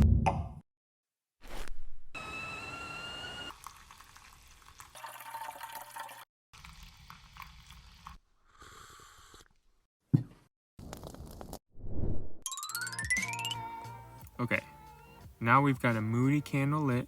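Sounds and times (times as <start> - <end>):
whistle-like rising tone: 2.2 - 3.5
water pouring and dripping: 3.5 - 8.2.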